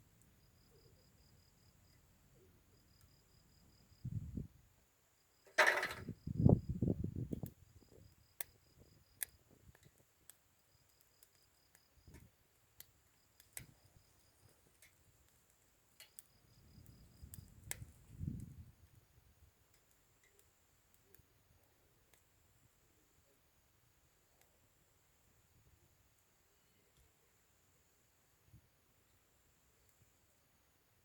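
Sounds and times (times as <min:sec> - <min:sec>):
crickets chirping: 0:00.0 - 0:18.7
campfire crackling and popping: 0:05.5 - 0:22.6.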